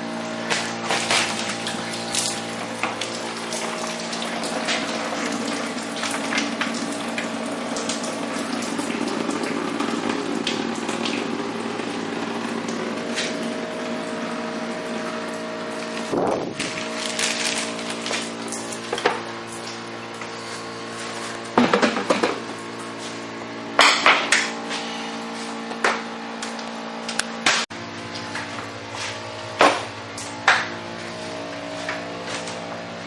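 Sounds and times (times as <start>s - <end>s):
steady mechanical hum: 0.0s - 33.0s
water running and spattering: 0.1s - 23.4s
water drips: 0.2s - 11.3s.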